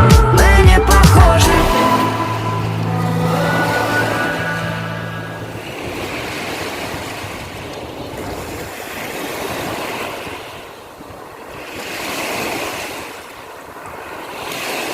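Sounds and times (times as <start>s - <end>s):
sea surf washing ashore: 1.4s - 14.9s.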